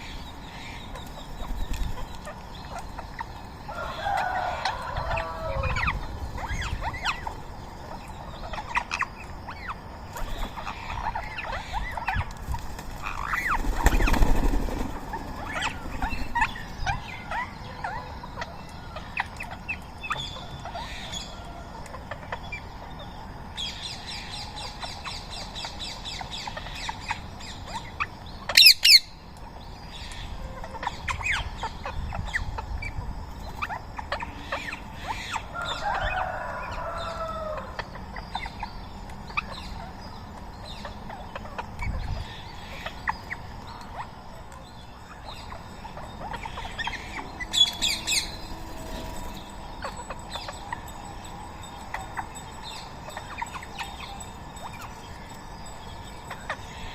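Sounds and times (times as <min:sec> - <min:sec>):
rapid bird trill: 0:00.0 - 0:18.5, 0:38.1 - 0:56.9
birds chirping and squawking: 0:00.0 - 0:56.9.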